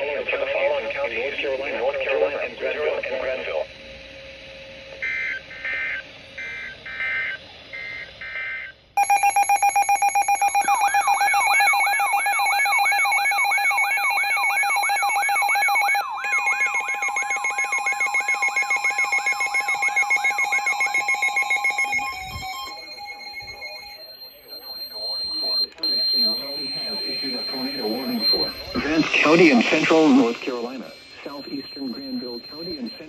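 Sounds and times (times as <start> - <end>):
steady alarm tone: 0.0 - 33.0
fast pulsing beeps: 3.0 - 33.0
digital data tone bursts: 4.9 - 33.0
rising siren-like sweep: 20.2 - 24.3.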